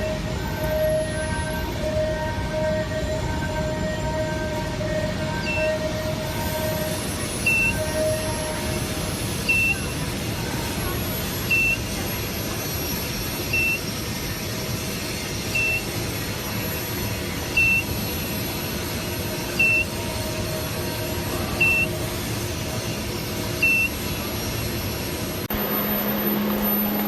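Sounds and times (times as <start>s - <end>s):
cooling fan hum: 0.0s - 27.0s
short high electronic beep: 5.4s - 8.7s, 9.3s - 10.0s, 11.4s - 12.0s, 13.5s - 13.9s, 15.6s - 16.0s, 17.5s - 18.1s, 19.6s - 20.0s, 21.6s - 22.0s, 23.6s - 24.1s, 25.5s - 27.0s.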